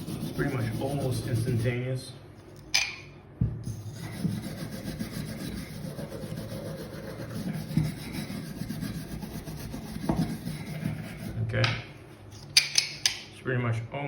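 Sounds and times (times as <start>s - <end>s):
wire brush scratching metal: 0.0s - 1.8s.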